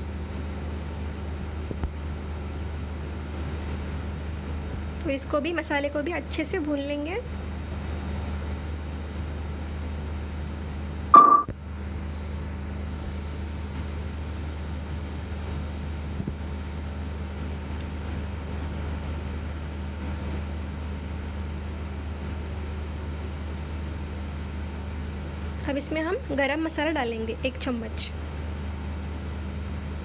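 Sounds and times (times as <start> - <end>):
low hum: 11.2 - 11.6.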